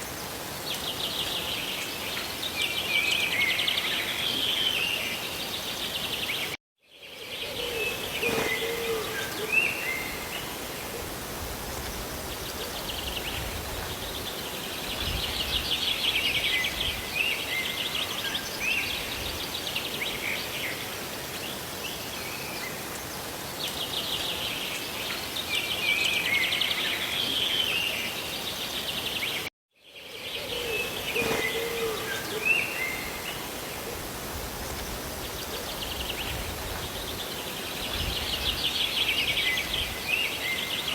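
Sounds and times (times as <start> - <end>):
rain and falling water: 0.0 - 6.6, 8.0 - 29.5, 30.9 - 40.9
birds chirping and trilling: 7.4 - 11.0, 21.5 - 40.9.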